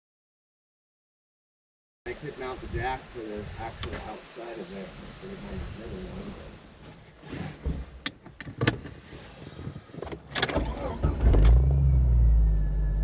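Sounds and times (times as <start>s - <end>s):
vehicle engine humming: 10.6s - 13.0s.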